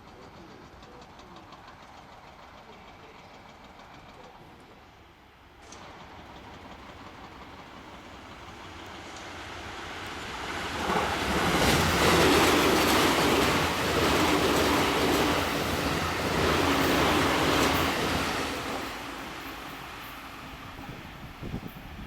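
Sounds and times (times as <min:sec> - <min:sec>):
wheels over rail joints: 0:00.0 - 0:05.0
electric train passing: 0:00.0 - 0:22.0.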